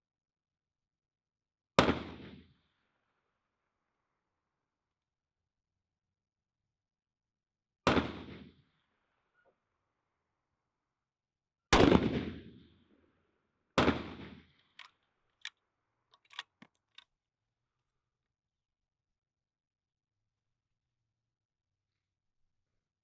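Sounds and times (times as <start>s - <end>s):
rifle shots: 16.3s - 16.5s.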